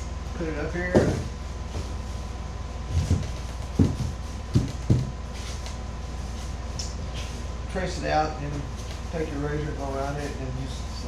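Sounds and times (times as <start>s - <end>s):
steady low hum: 0.0s - 11.0s
dull knocks of plywood pieces: 0.9s - 1.4s, 3.0s - 5.2s.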